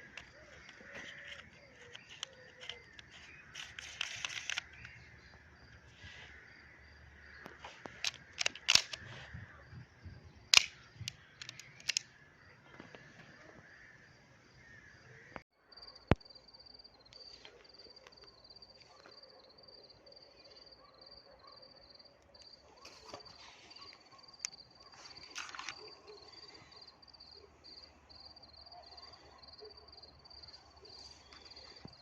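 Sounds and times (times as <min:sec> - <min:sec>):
faint outdoor ambience: 0:00.0 - 0:32.0
sharp clicks and snaps: 0:00.1 - 0:05.0, 0:07.4 - 0:09.0, 0:10.5 - 0:12.1.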